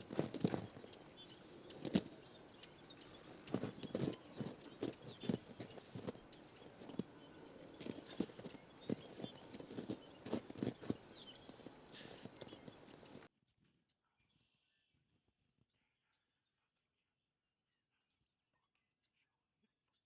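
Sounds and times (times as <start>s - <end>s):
small birds chirping: 0.0s - 13.3s.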